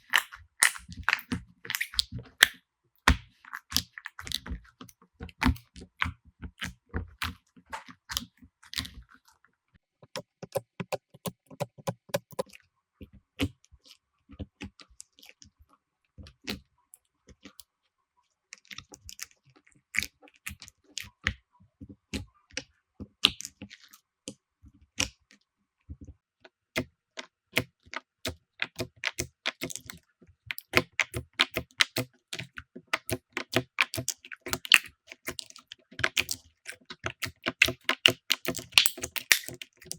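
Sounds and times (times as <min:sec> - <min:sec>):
slime clicking and popping: 0:00.0 - 0:02.6, 0:28.6 - 0:39.9.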